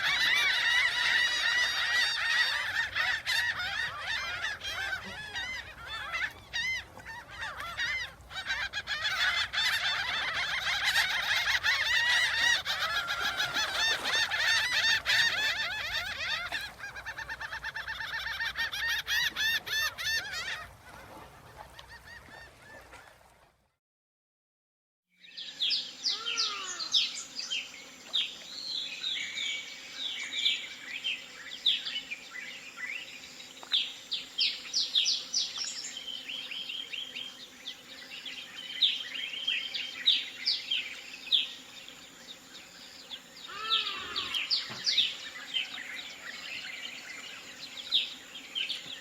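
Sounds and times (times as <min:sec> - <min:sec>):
geese honking: 0:00.0 - 0:22.4.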